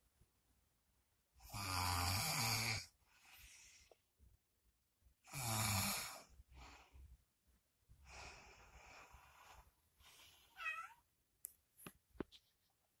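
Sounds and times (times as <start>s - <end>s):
person snoring: 1.4s - 2.9s, 5.3s - 6.3s
high-pitched meow-like call: 10.6s - 11.0s.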